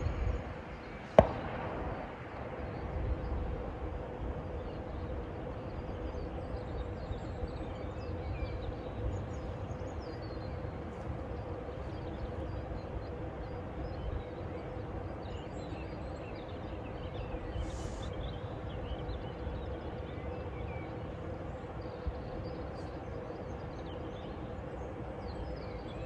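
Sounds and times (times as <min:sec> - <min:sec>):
faint constant hum: 0:00.0 - 0:26.0
steady low rumble: 0:00.0 - 0:26.0.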